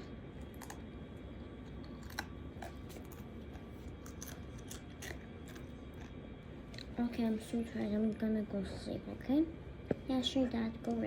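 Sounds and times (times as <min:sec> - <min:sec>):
low room hum: 0:00.0 - 0:11.0
person chewing crisps: 0:00.4 - 0:07.0.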